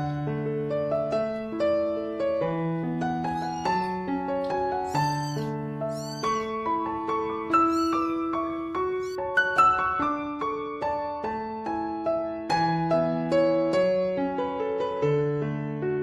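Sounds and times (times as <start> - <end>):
soft piano music: 0.0 - 16.0
cat mewing: 3.2 - 6.7, 7.4 - 9.2.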